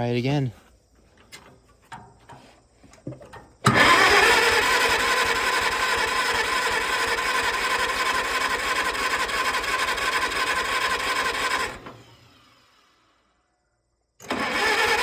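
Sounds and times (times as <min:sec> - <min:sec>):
starter cranking engine: 0:01.1 - 0:12.3, 0:14.2 - 0:15.0.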